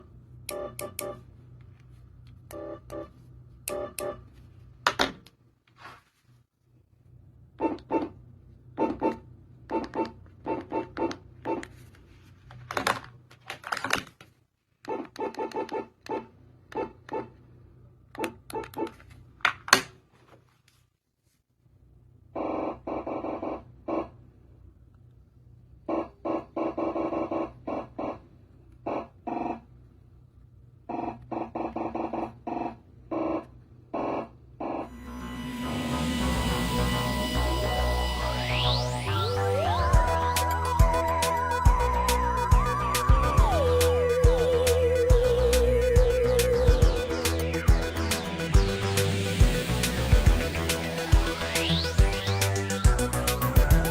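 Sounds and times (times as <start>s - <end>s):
steady low hum: 34.8s - 53.9s
buzzy pulses from speaker: 34.9s - 53.9s
harsh noisy bursts: 34.9s - 53.9s.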